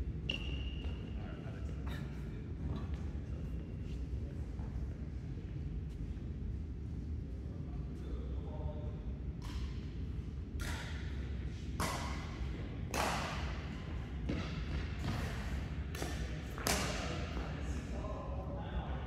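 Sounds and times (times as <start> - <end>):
rackets hitting shuttlecock: 9.4 - 9.8, 10.6 - 17.4.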